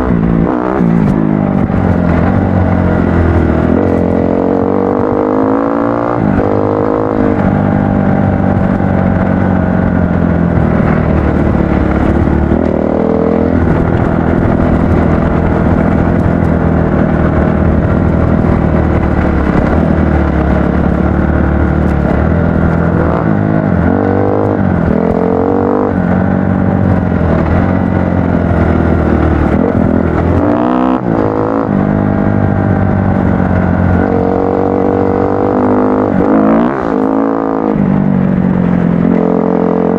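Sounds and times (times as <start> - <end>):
dirt bike engine revving: 10.4 - 32.5, 33.8 - 37.9.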